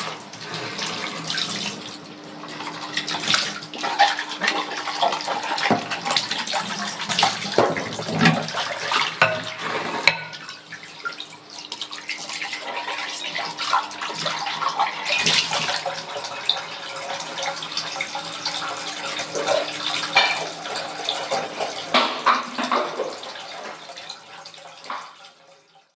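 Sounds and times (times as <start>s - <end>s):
tap water running and splashing: 0.0s - 25.9s
dishes clinking in a sink: 3.3s - 6.3s, 7.1s - 10.6s, 19.2s - 23.9s.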